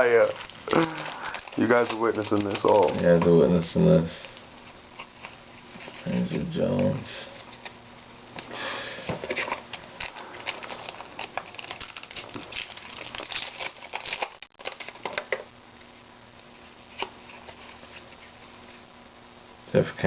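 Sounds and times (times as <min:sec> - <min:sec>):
cards flicking and crinkling: 0:00.0 - 0:05.4, 0:09.2 - 0:15.9.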